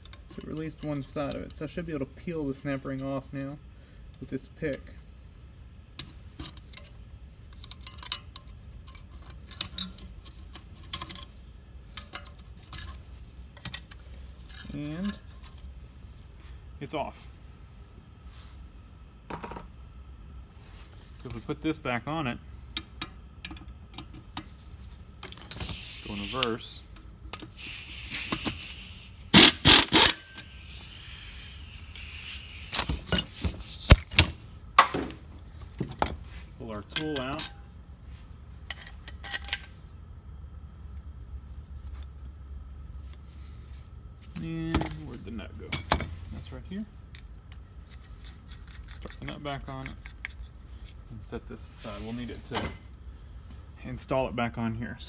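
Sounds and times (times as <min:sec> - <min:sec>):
metal pick clicking and scraping: 0:06.0 - 0:11.3, 0:47.1 - 0:51.0
power tool bursts: 0:27.6 - 0:33.1.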